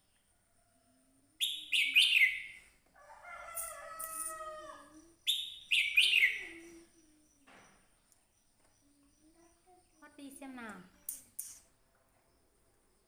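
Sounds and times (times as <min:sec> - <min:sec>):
bird whistled song: 0:01.4 - 0:02.6, 0:05.2 - 0:06.9.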